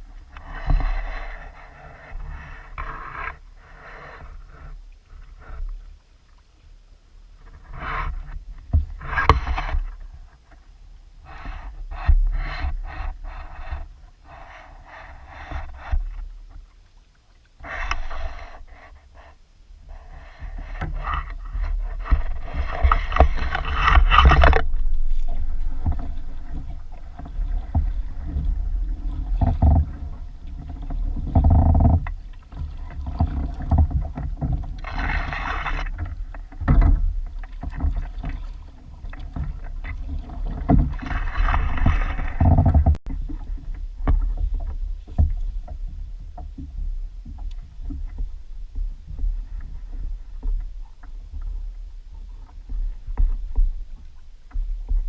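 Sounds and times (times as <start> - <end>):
steady low rumble: 17.8 - 37.4
water rushing and splashing: 19.9 - 54.6.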